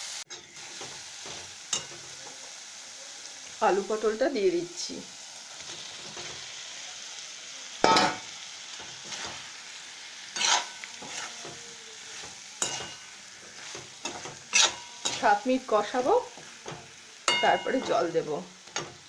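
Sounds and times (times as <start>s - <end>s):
vegetables sizzling in hot oil: 0.0s - 19.0s
spatula scraping a pan: 8.8s - 9.6s, 10.2s - 19.0s.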